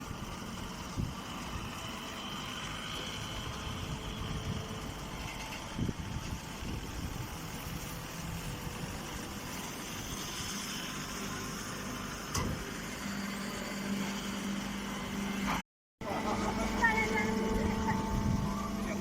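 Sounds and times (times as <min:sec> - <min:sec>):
baling machine running: 0:00.0 - 0:19.0
low hum: 0:16.1 - 0:19.0.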